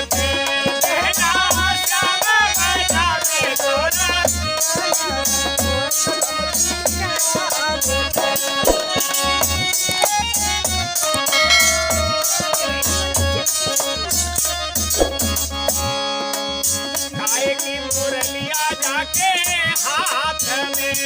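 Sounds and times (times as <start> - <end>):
sliding lead melody: 11.3 - 13.2
deep drum beat: 11.4 - 13.0.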